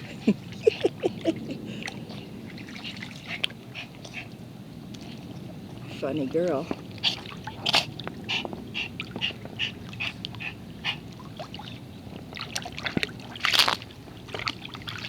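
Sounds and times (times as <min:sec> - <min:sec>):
water splashing: 0:00.0 - 0:15.0.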